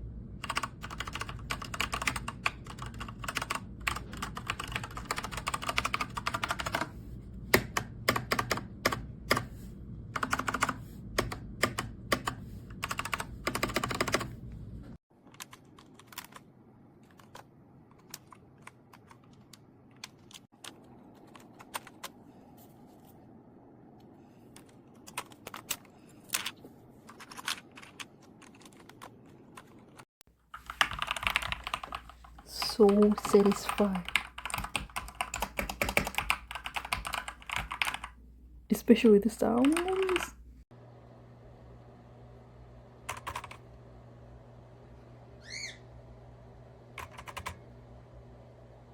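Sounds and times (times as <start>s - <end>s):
mechanical keyboard typing: 0.4s - 6.9s, 7.6s - 9.5s, 10.2s - 14.3s, 30.6s - 38.2s, 39.5s - 40.3s, 43.1s - 43.6s, 47.0s - 47.6s.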